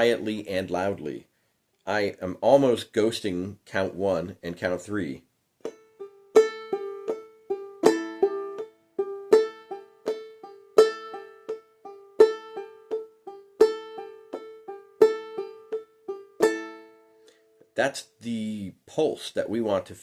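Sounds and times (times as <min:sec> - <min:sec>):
banjolele strumming: 0:05.6 - 0:17.2.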